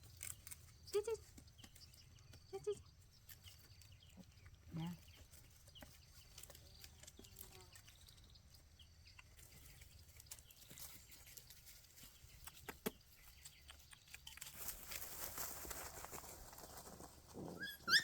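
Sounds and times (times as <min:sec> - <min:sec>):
rustling: 0:13.2 - 0:18.0.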